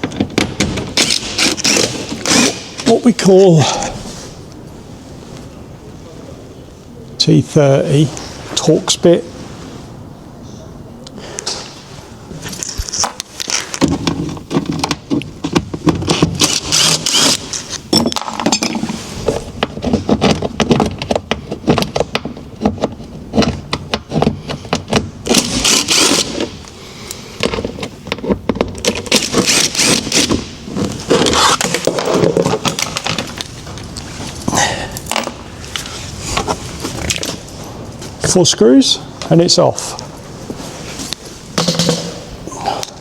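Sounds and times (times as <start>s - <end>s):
plastic scraping: 27.4s - 34.3s.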